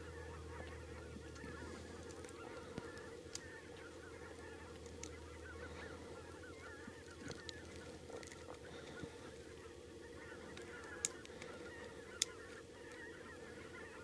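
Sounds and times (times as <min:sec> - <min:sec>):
geese honking: 0:00.0 - 0:14.0
low hum: 0:00.0 - 0:14.0.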